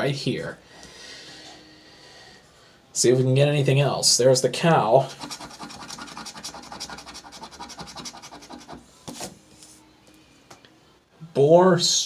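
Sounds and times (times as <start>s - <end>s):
lottery ticket being scratched: 5.1s - 9.3s.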